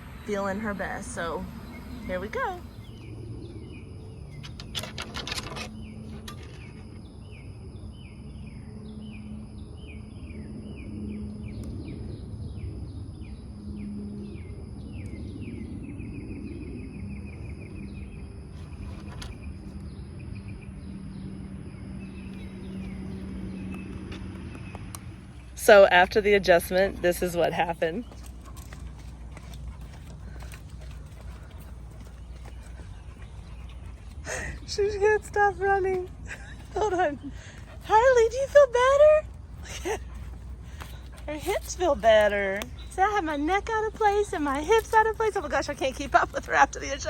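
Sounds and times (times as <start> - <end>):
bird chirping and trilling: 0.0 - 4.9
low steady hum: 0.0 - 47.0.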